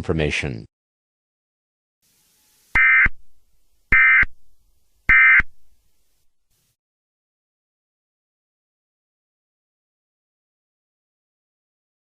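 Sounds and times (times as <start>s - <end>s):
digital data tone bursts: 2.7s - 4.4s, 5.1s - 5.6s.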